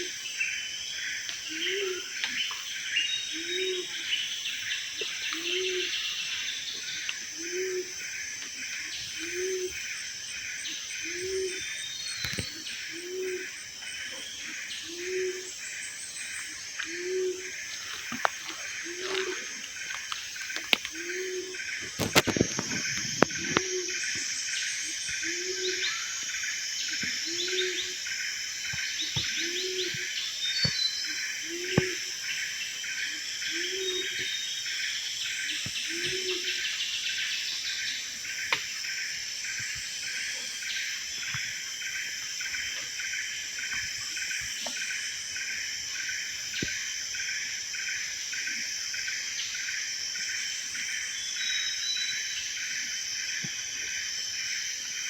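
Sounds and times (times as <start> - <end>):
insect chorus: 0.0 - 55.0
low hooting call: 20.9 - 24.3.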